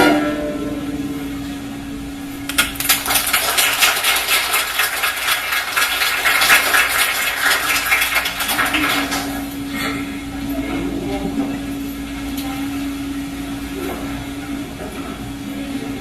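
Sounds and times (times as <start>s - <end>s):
audience applauding: 2.5s - 9.7s.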